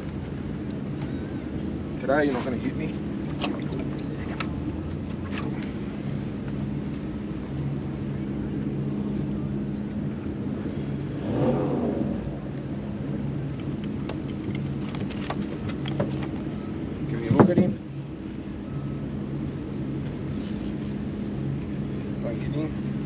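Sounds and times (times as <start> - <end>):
water noise: 0.0 - 7.9, 8.6 - 16.9
boat engine humming: 0.0 - 23.0
wind: 0.0 - 23.0.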